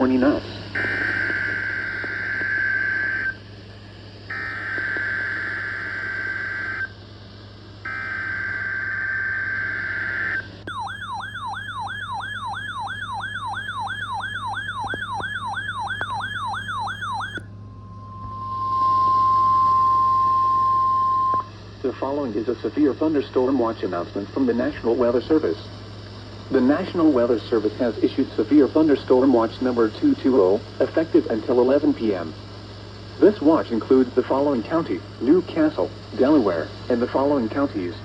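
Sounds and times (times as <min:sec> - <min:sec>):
warbling siren-like alert tone: 0:07.9 - 0:21.4
steady single alarm tone: 0:07.9 - 0:21.5
data bursts: 0:10.7 - 0:17.4.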